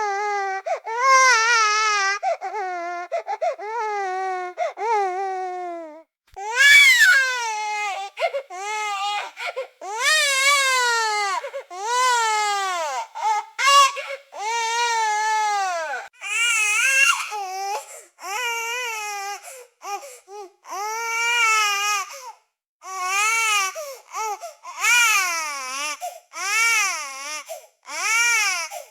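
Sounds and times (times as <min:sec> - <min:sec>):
baby crying and screaming: 0:00.0 - 0:19.4.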